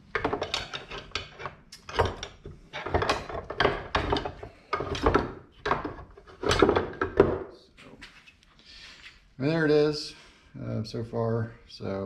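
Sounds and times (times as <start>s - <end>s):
wood clunking against metal: 0.0s - 7.6s.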